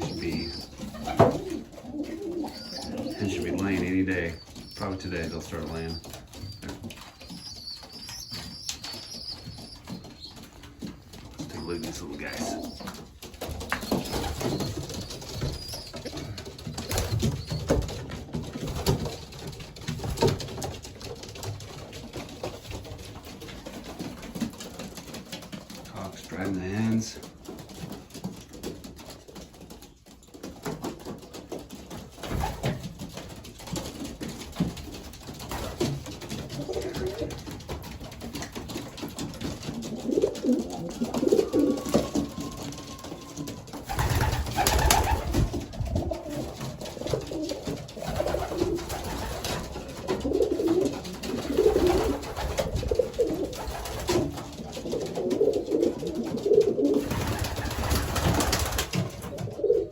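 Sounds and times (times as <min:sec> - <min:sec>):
pigeons cooing: 0:00.0 - 0:28.0, 0:28.6 - 0:59.9.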